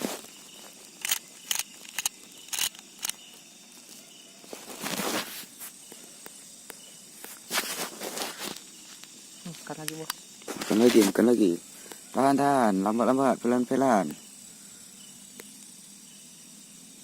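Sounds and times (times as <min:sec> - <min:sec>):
rustling: 0:00.0 - 0:03.1, 0:03.8 - 0:06.0, 0:07.2 - 0:09.7
night insects chirping: 0:00.0 - 0:17.0.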